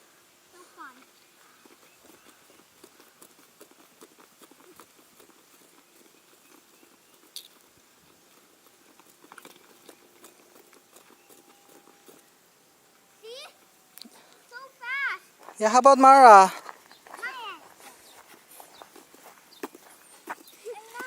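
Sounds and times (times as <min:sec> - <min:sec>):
rope taps and scuffs: 0:01.0 - 0:12.4, 0:16.6 - 0:21.0.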